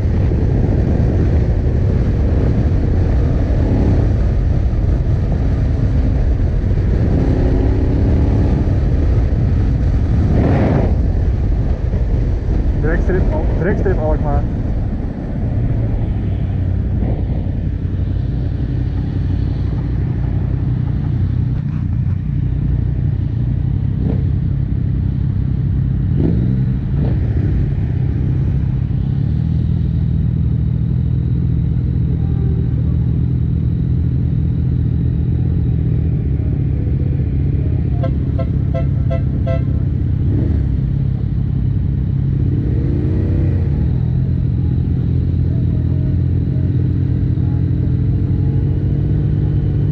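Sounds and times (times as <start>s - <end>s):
motorcycle engine running: 0.0s - 49.9s
passing vehicle engine notes: 1.6s - 21.6s.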